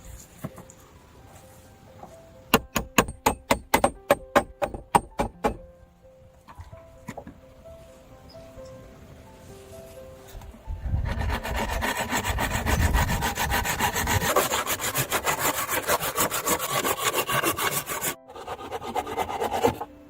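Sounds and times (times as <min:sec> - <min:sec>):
saw cutting through wood: 0:10.9 - 0:20.0.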